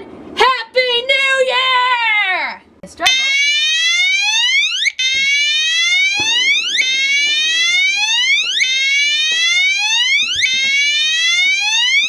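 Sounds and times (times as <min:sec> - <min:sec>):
electronic whoop alarm: 0:03.1 - 0:12.0.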